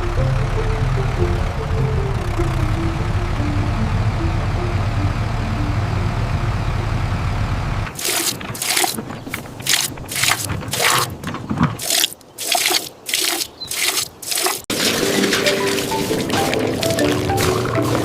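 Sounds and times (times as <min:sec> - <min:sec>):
tractor engine rumbling: 0:00.0 - 0:18.0
scraping crunching strokes: 0:07.9 - 0:18.0.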